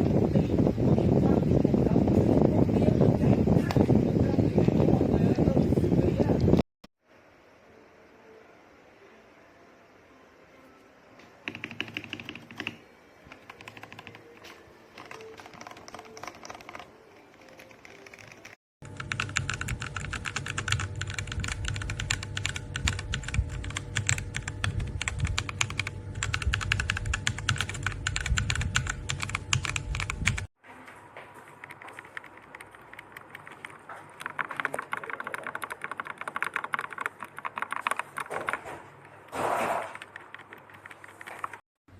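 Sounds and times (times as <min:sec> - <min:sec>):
mechanical keyboard typing: 0:11.5 - 0:30.5, 0:31.5 - 0:38.7, 0:39.8 - 0:41.6.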